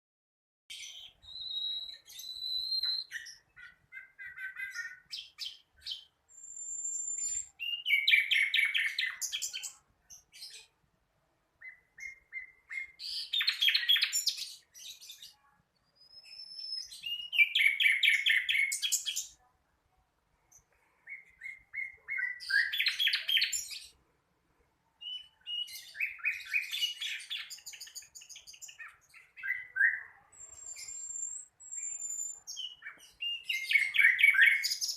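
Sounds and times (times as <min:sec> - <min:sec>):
thin high bird whistles: 0:00.9 - 0:03.4, 0:05.9 - 0:09.2, 0:16.0 - 0:19.1, 0:29.9 - 0:34.9
flycatcher chirping and trilling: 0:30.4 - 0:32.6.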